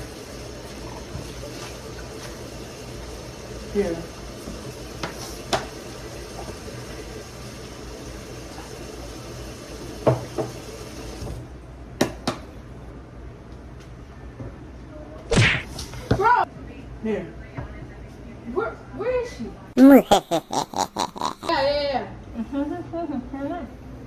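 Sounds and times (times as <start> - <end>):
kitchen tap running: 0.0 - 11.5.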